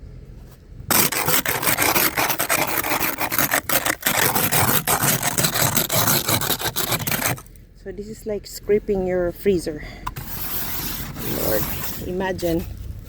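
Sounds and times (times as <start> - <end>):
ice scraper scraping ice: 0.9 - 7.5, 10.2 - 12.6.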